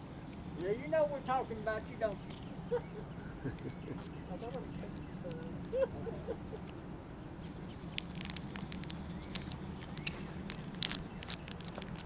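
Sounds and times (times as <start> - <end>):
small things clicking and scraping: 3.5 - 5.8, 7.4 - 12.0.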